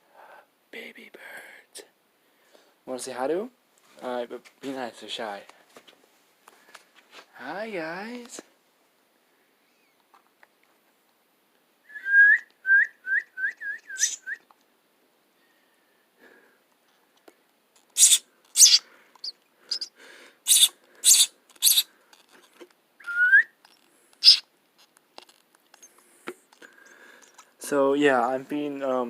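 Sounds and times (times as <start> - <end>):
nestling birds high chirps: 13.8 - 14.4, 18.0 - 21.9, 23.0 - 24.5
raspy begging calls: 13.9 - 14.3, 18.0 - 21.9, 24.2 - 24.4.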